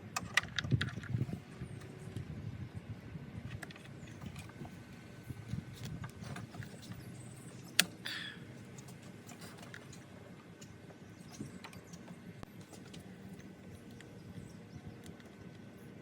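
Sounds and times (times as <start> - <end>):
light mechanical clicks: 5.8 - 8.0.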